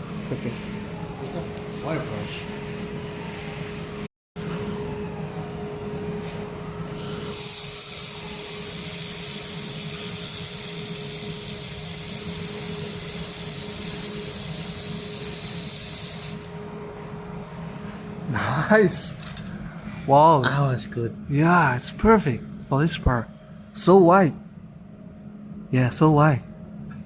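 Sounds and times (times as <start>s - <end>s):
machine humming: 4.4s - 27.0s
laser welder hissing: 6.8s - 16.6s.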